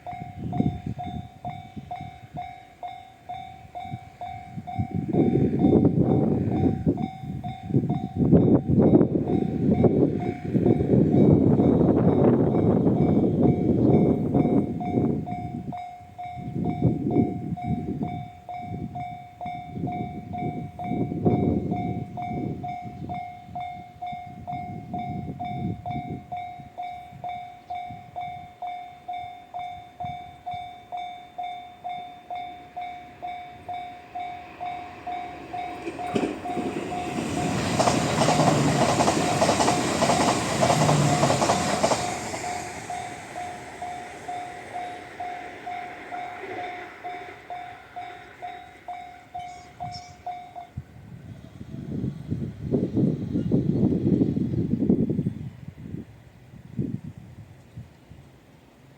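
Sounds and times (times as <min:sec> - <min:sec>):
train rushing past: 0:00.0 - 0:23.3, 0:29.5 - 0:57.1
level-crossing alarm dinging: 0:00.0 - 0:50.8
wheels clattering over rail joints: 0:34.6 - 0:49.6.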